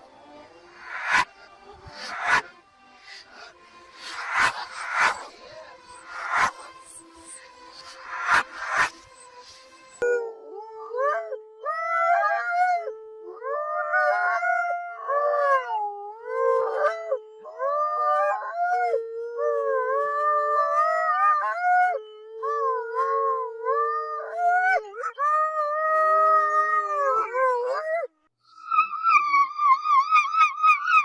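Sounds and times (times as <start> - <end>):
wavering howling calls: 0.8 - 12.8.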